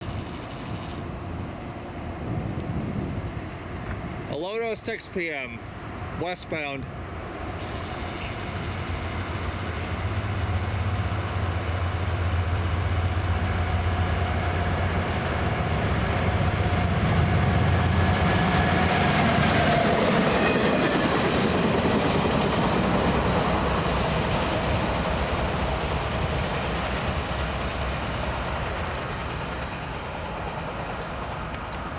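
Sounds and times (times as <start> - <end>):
diesel locomotive engine drone: 0.0 - 31.9
train wheels rolling on rails: 6.8 - 31.9.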